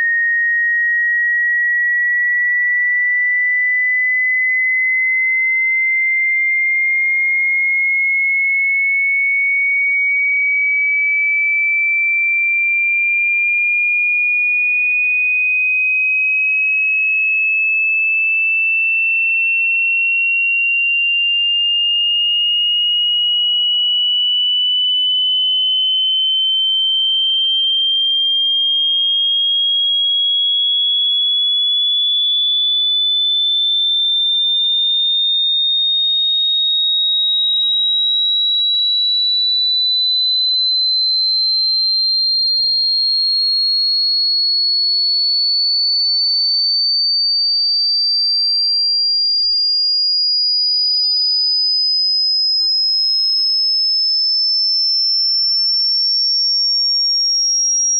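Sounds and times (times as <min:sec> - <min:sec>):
rising sine tone: 0:23.8 - 0:28.6, 0:43.8 - 0:47.6.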